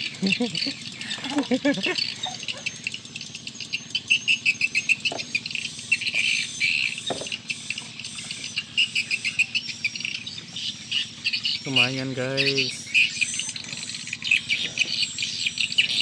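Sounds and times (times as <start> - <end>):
insects chirping: 0.0 - 16.0.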